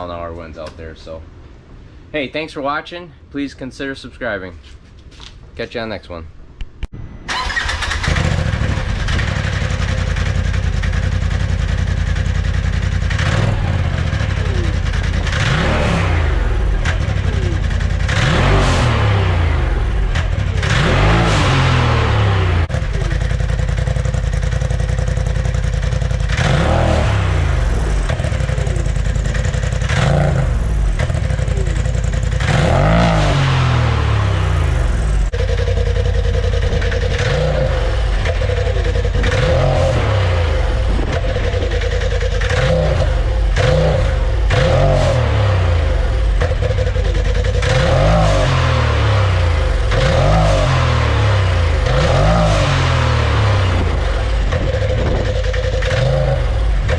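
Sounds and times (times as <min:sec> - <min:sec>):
engine revving: 0:07.3 - 0:56.9
steady high whine: 0:08.8 - 0:44.6.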